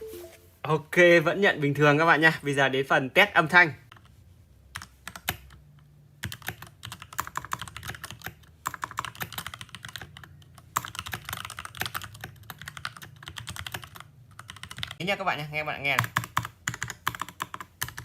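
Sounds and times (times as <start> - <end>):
mechanical keyboard fast typing: 4.8 - 5.6, 6.2 - 15.0, 16.0 - 18.0.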